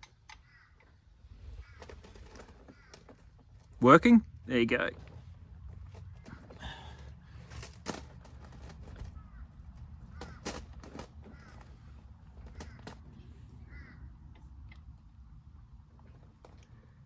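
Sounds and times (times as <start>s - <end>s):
crow cawing faintly: 0.3s - 3.6s, 8.5s - 14.7s.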